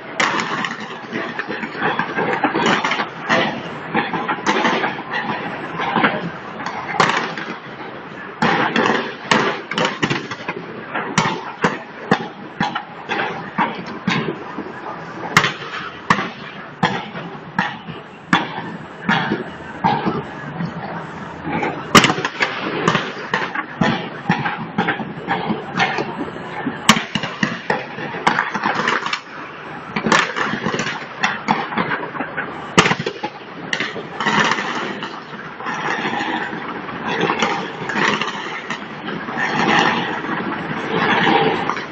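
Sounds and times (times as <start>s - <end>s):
fireworks crackle rumble: 0.0s - 41.9s
fireworks shells bursting: 11.2s - 41.9s
sharp firework bang: 32.8s - 36.5s.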